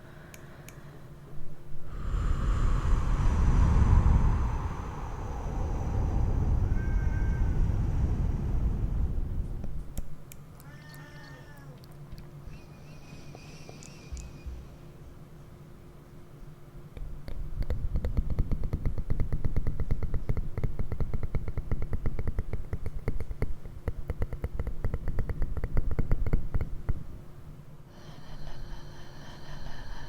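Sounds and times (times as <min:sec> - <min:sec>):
steady hiss with high tones: 0:01.7 - 0:10.2.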